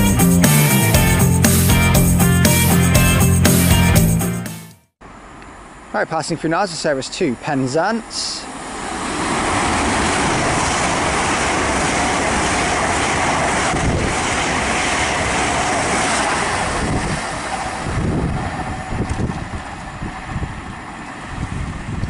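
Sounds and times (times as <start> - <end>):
train passing at speed: 5.1 - 22.0
wind gusts on microphone: 8.5 - 22.0.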